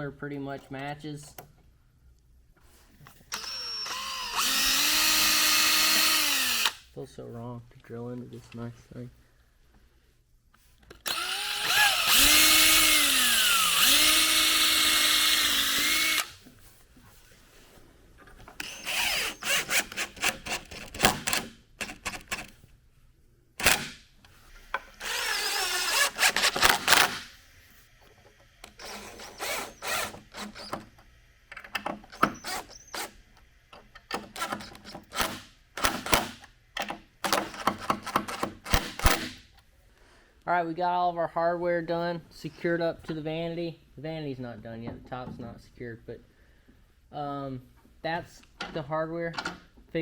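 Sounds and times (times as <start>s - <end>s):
power drill driving screws: 3.3s - 6.9s, 11.0s - 16.4s, 18.6s - 22.6s, 23.6s - 24.0s, 24.7s - 27.4s, 28.6s - 31.0s, 32.0s - 33.2s, 34.1s - 36.5s, 37.3s - 39.4s.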